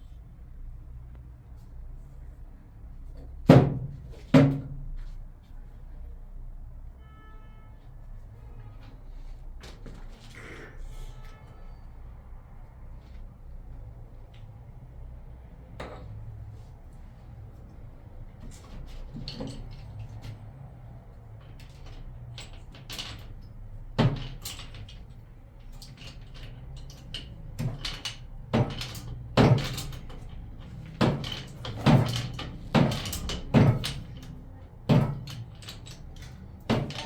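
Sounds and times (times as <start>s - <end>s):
sharp knocks and thumps: 27.5s - 34.2s.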